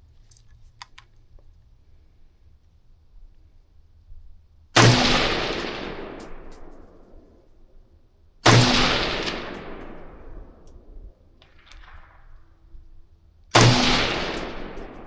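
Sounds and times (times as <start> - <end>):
gunshots with long echo: 4.8 - 7.5, 8.4 - 12.6, 13.5 - 15.0.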